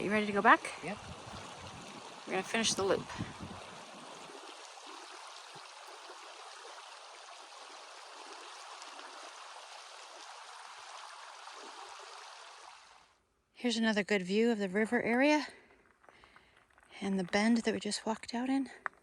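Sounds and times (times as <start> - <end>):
river water rushing: 0.0 - 13.0.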